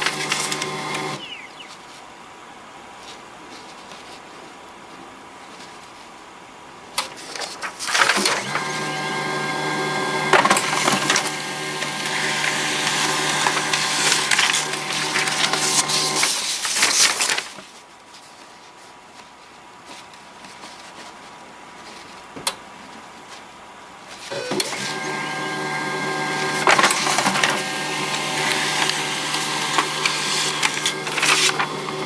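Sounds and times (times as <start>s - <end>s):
printer clicks: 0.0s - 1.2s, 7.8s - 17.1s, 24.3s - 32.0s
laser printer motor hum: 0.0s - 1.7s, 8.2s - 16.4s, 24.3s - 32.0s
crackling squeak of paper feed: 0.0s - 2.0s, 7.1s - 22.2s, 24.1s - 32.0s.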